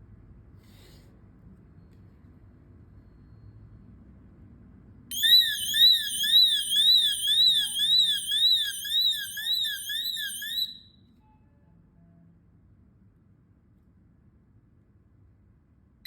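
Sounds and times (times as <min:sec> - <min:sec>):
high electronic alarm warble: 0:05.1 - 0:10.9.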